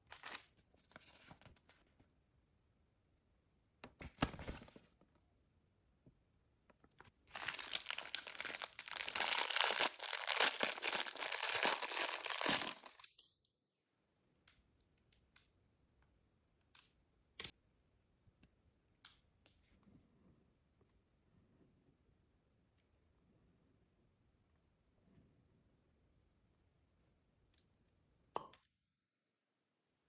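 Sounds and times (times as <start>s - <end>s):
packaging crinkling: 0.1s - 0.4s, 7.2s - 13.2s.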